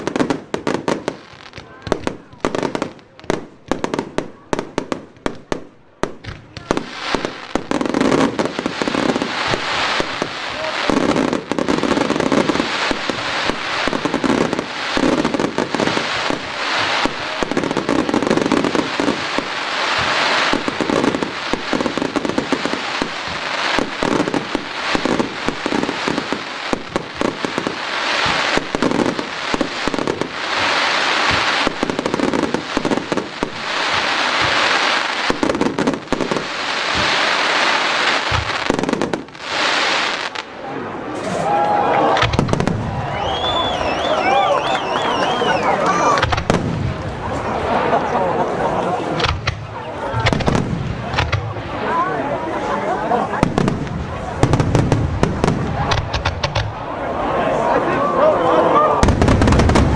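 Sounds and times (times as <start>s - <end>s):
fireworks bangs: 0.0s - 59.9s
firework shell bursts and crackle: 4.6s - 40.5s, 41.2s - 44.2s, 46.1s - 47.5s, 49.1s - 51.6s, 53.4s - 56.9s.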